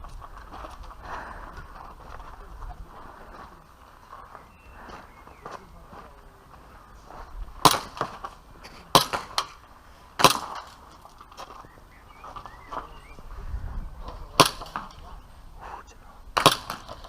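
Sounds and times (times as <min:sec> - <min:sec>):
airsoft pistol shots: 0:07.6 - 0:08.1, 0:08.9 - 0:09.6, 0:10.2 - 0:10.7, 0:14.4 - 0:14.9, 0:16.4 - 0:17.0.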